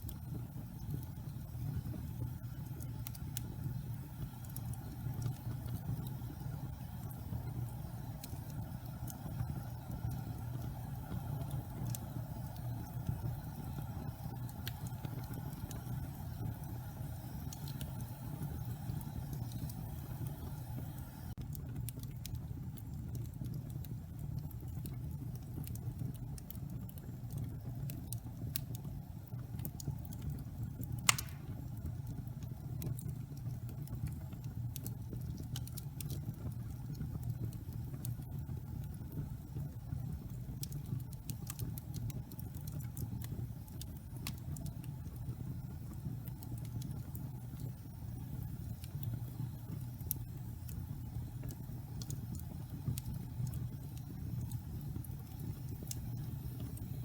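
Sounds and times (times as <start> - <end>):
wood fire crackling: 0.0 - 57.0
loud sharp pop: 31.1 - 31.6.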